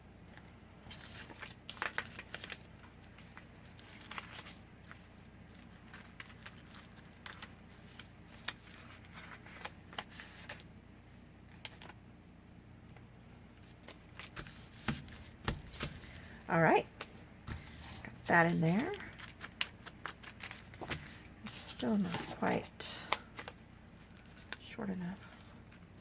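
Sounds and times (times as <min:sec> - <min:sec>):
low room hum: 0:00.0 - 0:26.0
paper rustling: 0:00.9 - 0:10.6, 0:13.6 - 0:16.4, 0:17.0 - 0:22.6.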